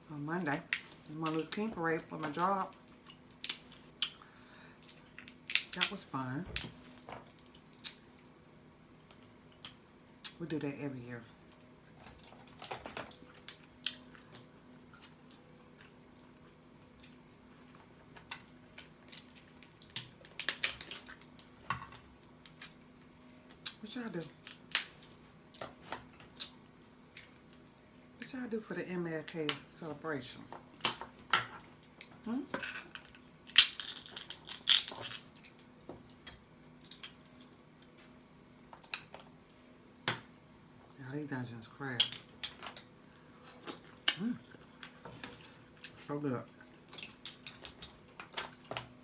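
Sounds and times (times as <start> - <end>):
faint steady hum: 0.0 - 49.0
crab shell cracking: 3.1 - 4.2, 4.9 - 6.0, 18.8 - 21.4, 24.4 - 25.0, 32.9 - 35.3.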